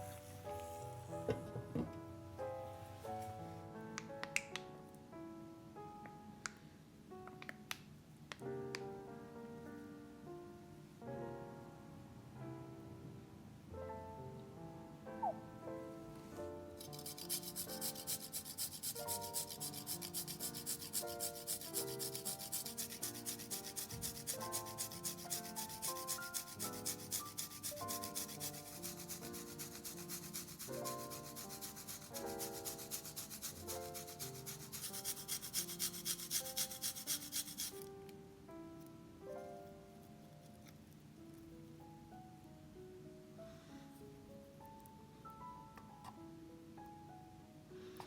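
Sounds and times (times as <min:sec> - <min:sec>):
soft piano music: 0:00.0 - 0:48.0
utensil scraping food: 0:16.8 - 0:37.9.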